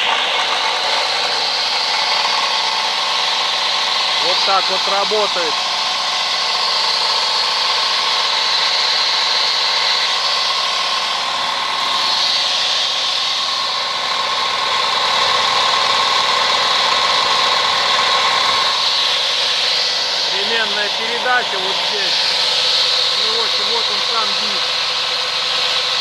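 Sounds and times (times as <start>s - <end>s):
stone-cutting saw motor humming: 0.0s - 26.0s.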